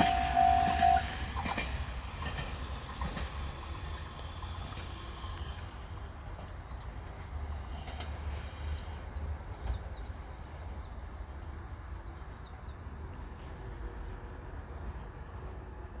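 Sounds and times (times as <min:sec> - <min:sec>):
diesel railcar rumbling: 0:00.0 - 0:16.0
small birds chirping: 0:08.4 - 0:13.0.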